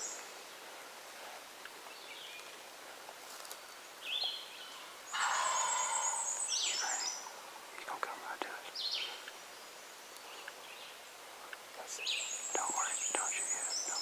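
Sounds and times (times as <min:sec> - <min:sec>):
turkey gobbling: 0:05.1 - 0:06.6
songbird trilling: 0:05.1 - 0:07.4.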